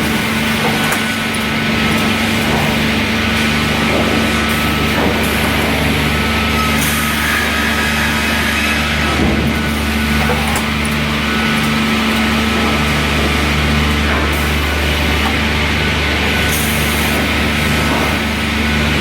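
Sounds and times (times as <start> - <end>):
high-pitched machine noise: 0.0 - 19.0
sawmill machinery humming: 0.0 - 19.0.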